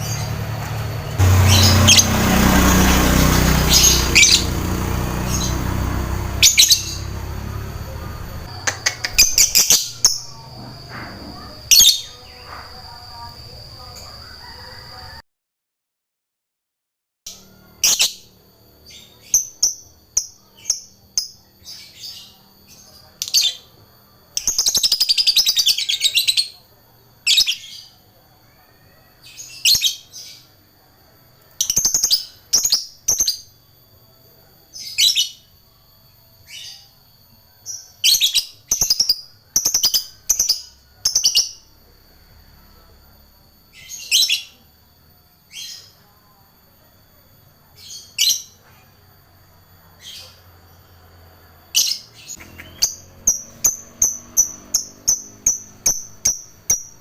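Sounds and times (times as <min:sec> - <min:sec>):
bird chirping: 0:00.0 - 0:14.5, 0:51.7 - 0:57.0
bird chattering trill: 0:01.2 - 0:12.5, 0:51.8 - 0:57.0.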